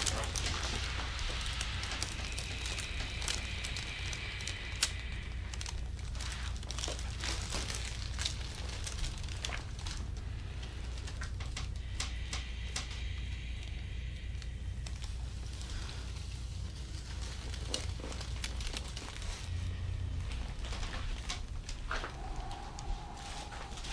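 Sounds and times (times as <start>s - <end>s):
crinkling and rubbing: 0.0s - 23.9s
steady low hum: 0.0s - 23.9s
faint clicks: 11.0s - 15.2s.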